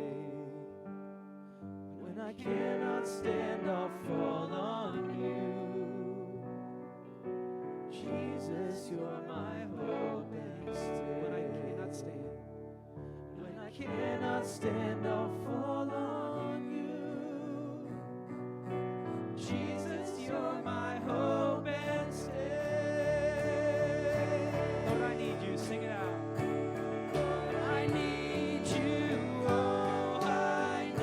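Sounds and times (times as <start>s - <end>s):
band playing slow song: 22.4s - 31.0s.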